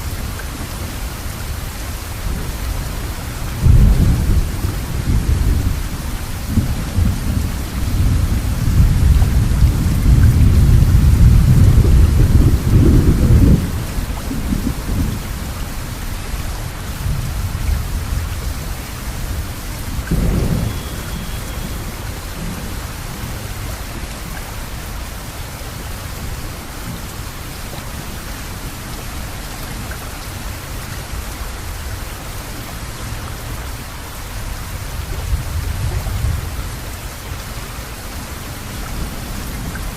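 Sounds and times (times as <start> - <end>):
steady rain: 0.0 - 39.9
thunder rumbling: 2.3 - 15.6, 17.0 - 24.6.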